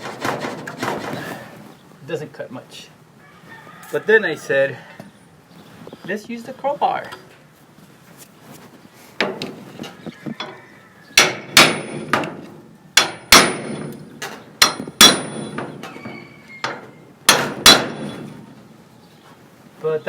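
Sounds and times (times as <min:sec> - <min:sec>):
hammer striking metal crowbar: 0:11.2 - 0:12.3, 0:13.0 - 0:14.0, 0:14.6 - 0:15.7, 0:17.3 - 0:18.4.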